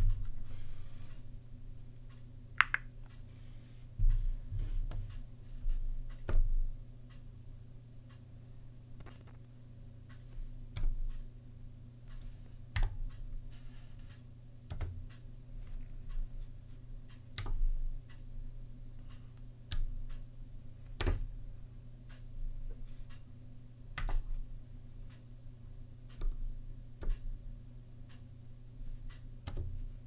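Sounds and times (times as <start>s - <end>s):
keyboard keystrokes clicking: 2.6s - 2.9s, 10.8s - 11.2s, 14.7s - 15.0s, 24.0s - 24.3s, 29.4s - 29.8s.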